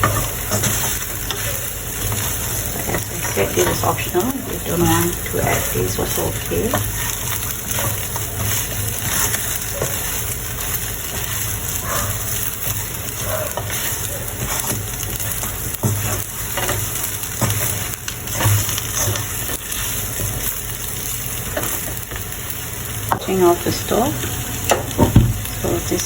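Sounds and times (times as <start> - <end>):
chicken sizzling in a pan: 0.0 - 26.0.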